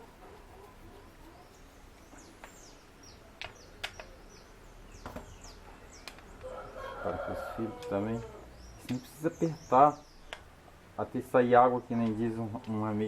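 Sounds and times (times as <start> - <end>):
small birds chirping: 0.0 - 13.0
sharp clicks: 3.4 - 4.2, 6.0 - 6.5, 10.2 - 10.5.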